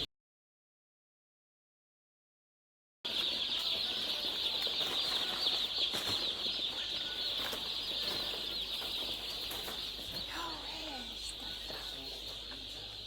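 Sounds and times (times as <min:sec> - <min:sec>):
chicks peeping: 0:03.1 - 0:13.0.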